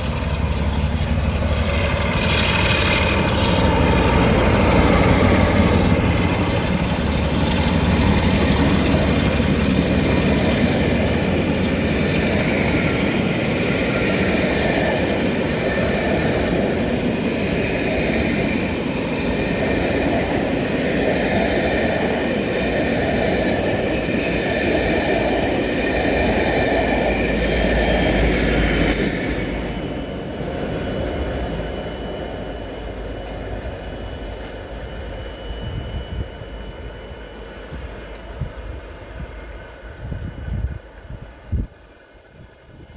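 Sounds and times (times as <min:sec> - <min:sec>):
train wheels rumbling: 0:00.0 - 0:41.8
high wheel squealing: 0:26.0 - 0:30.3.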